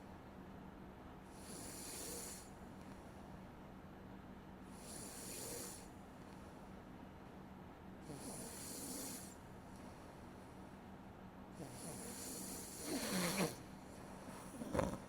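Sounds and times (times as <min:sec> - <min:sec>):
person snoring: 0:01.4 - 0:02.5, 0:04.8 - 0:05.9, 0:08.0 - 0:09.4, 0:11.6 - 0:13.6, 0:14.5 - 0:15.0.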